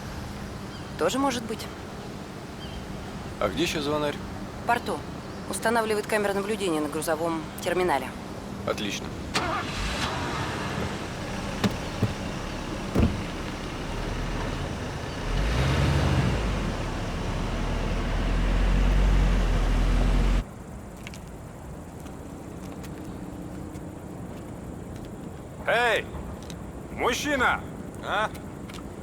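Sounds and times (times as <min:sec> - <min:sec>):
outdoor background noise: 0:00.0 - 0:29.0
car engine pulling away: 0:09.3 - 0:20.4
short knocks: 0:11.4 - 0:14.1.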